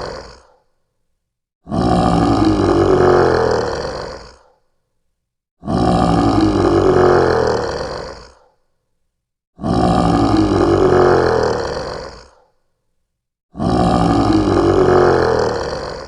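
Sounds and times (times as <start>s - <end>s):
large beast roaring: 0.0s - 0.6s, 1.6s - 4.5s, 5.6s - 8.5s, 9.6s - 12.5s, 13.5s - 16.0s.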